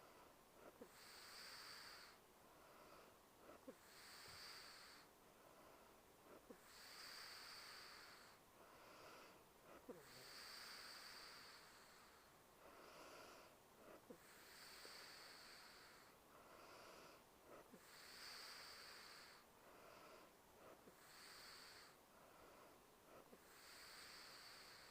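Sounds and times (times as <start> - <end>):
woman breathing and snoring: 0.0 - 24.9.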